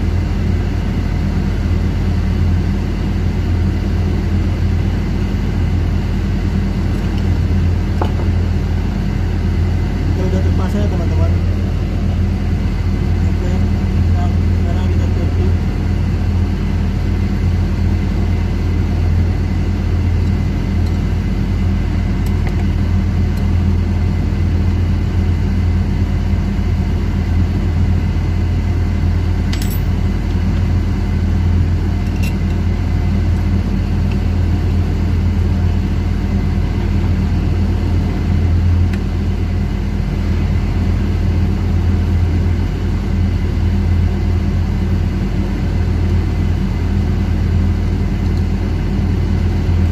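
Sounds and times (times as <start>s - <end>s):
loud low machinery drone: 0.0s - 49.9s
light metallic clinks: 29.5s - 30.0s.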